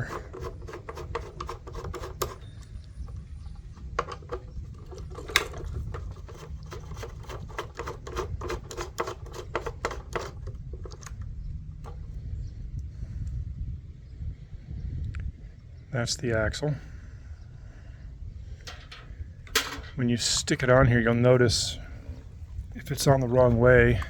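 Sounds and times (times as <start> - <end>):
screwdriver clicking: 0.0 - 2.5, 3.9 - 11.2.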